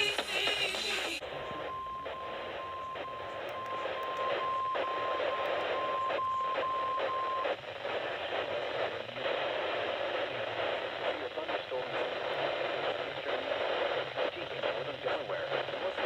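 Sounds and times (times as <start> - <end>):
faint static clicks: 0.0 - 16.0
radio hiss: 0.0 - 16.0.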